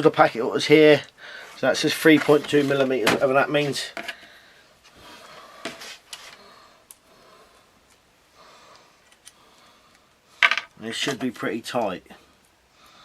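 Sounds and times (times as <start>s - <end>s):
soft rustle: 1.3s - 6.6s.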